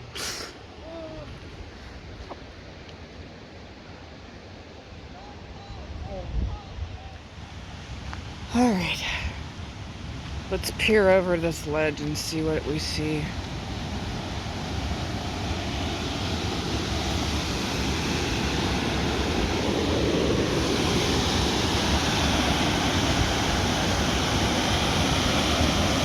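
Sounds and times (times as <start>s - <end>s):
waterfall rushing: 15.0s - 26.0s.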